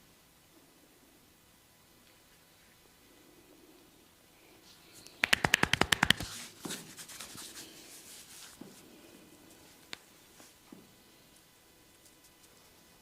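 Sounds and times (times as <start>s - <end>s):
hands rubbing hair and skin: 5.1s - 8.8s
hand taps on head: 5.2s - 6.3s.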